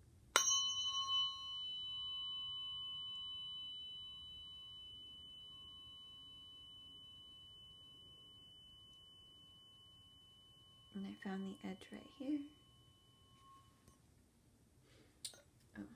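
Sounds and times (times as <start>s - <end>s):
tuning fork ringing: 0.0s - 14.6s.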